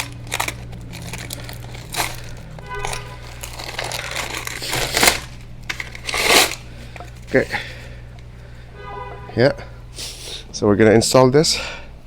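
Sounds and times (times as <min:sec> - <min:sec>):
plastic wrapping crinkling: 0:00.0 - 0:07.3
steady low hum: 0:00.0 - 0:12.0.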